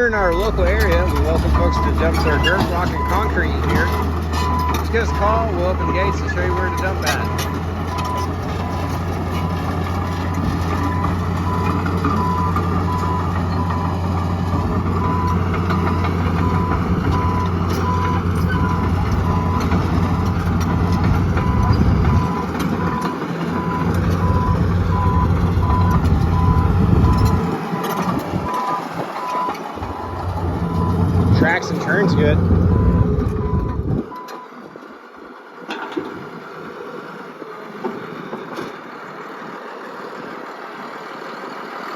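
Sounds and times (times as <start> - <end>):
dozer diesel engine under load: 0.0 - 41.9
back-up alarm beeping: 15.0 - 19.7, 21.4 - 34.5.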